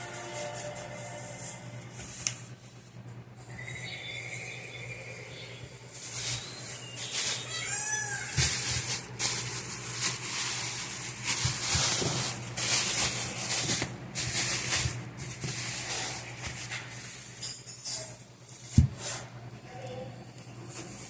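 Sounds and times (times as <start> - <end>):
plastic bags crinkling: 5.9 - 17.5.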